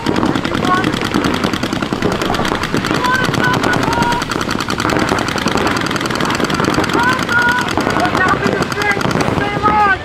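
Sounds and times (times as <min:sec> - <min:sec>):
paintball markers firing: 0:00.0 - 0:10.0.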